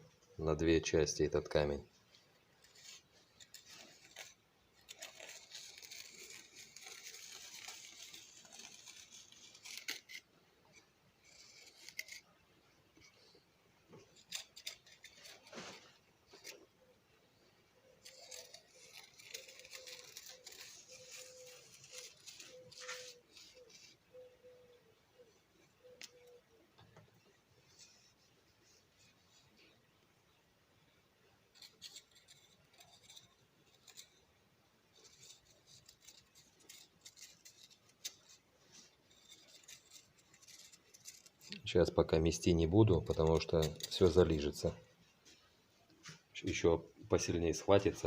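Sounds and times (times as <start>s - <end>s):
metal knife scraping cement: 2.6s - 12.4s, 14.0s - 16.6s, 17.8s - 24.1s, 31.5s - 34.3s, 34.9s - 44.9s.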